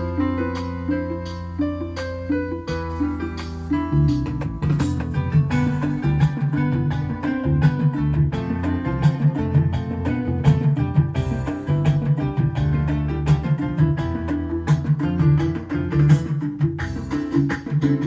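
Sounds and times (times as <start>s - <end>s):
bass line: 0.0s - 18.0s
percussion hits steady beat: 0.0s - 18.0s
plucked guitar-like melody: 0.0s - 18.0s.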